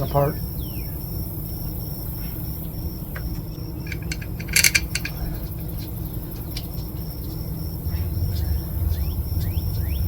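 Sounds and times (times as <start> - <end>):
light metal clicks: 3.2 - 7.0
sharp metallic clinks: 3.8 - 5.5.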